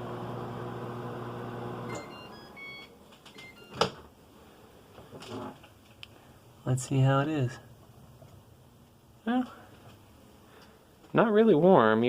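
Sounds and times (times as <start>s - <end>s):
microwave oven humming: 0.0s - 3.8s
short electronic beeps: 1.9s - 3.8s.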